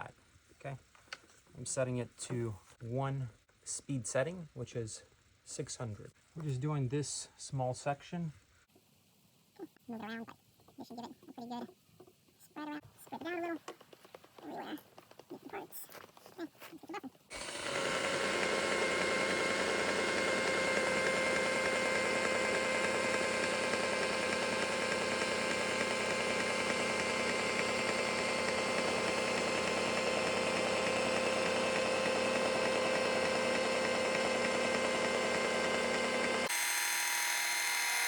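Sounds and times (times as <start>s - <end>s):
rotary polisher motor whine: 17.3s - 38.0s.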